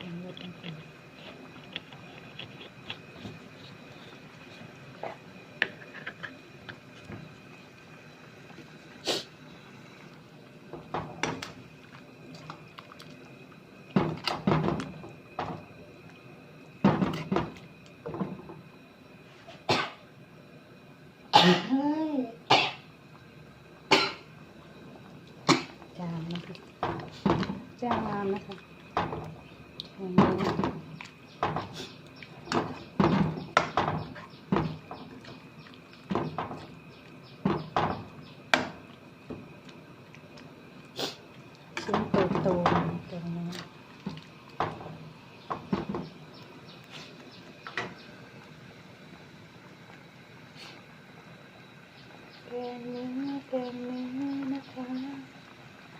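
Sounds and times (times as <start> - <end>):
dishes knocking and clinking: 14.0 - 15.6, 16.8 - 18.6, 26.8 - 28.2, 28.9 - 29.4, 30.2 - 31.8, 32.5 - 35.4, 36.1 - 36.7, 37.4 - 39.5, 41.8 - 43.1, 44.1 - 46.2.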